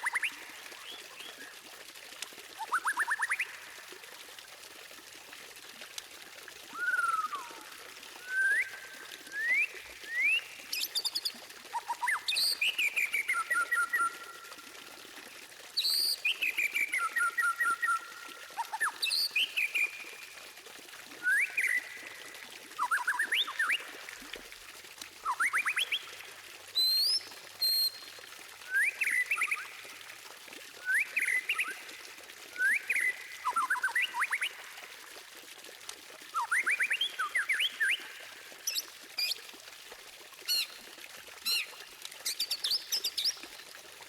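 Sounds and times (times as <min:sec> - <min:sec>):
faint steady hiss: 0:00.0 - 0:44.0
bird singing whistled phrases: 0:06.7 - 0:07.6, 0:08.2 - 0:11.1, 0:12.0 - 0:14.4, 0:18.8 - 0:20.2, 0:21.2 - 0:22.0, 0:22.8 - 0:23.8, 0:25.2 - 0:26.1, 0:26.8 - 0:28.0, 0:28.7 - 0:29.7, 0:30.8 - 0:31.8, 0:32.5 - 0:34.6, 0:36.4 - 0:38.2.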